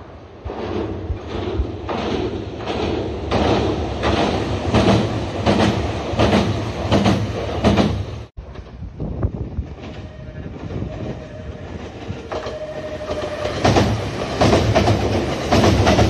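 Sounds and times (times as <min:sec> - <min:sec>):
low train rumble: 0:00.0 - 0:16.0
train wheels clattering: 0:00.3 - 0:16.0.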